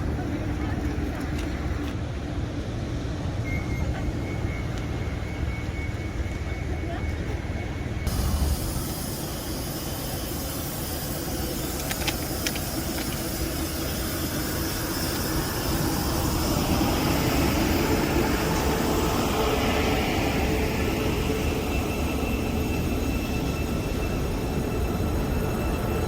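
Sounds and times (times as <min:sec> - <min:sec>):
train rumbling on rails: 0:00.0 - 0:26.0.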